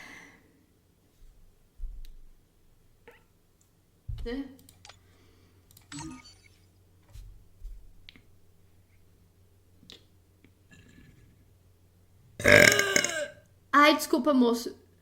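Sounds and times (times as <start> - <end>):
woman burping loudly: 12.4 - 13.4.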